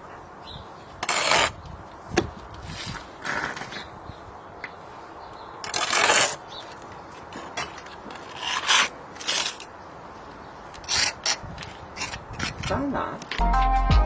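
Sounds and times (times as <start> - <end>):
scraping on brick and mortar: 1.0 - 4.8, 5.6 - 13.4.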